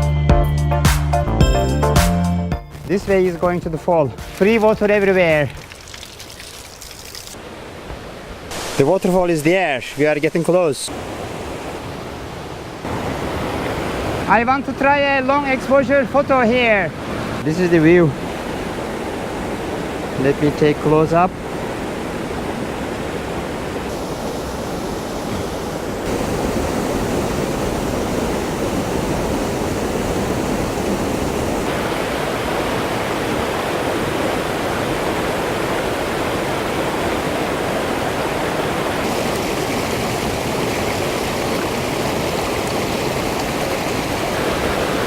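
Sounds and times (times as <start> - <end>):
waterfall rushing: 2.9 - 45.0.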